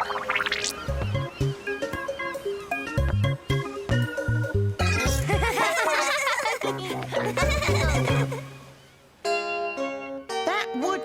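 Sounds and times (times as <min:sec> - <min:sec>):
cartoon background music: 0:00.0 - 0:08.5.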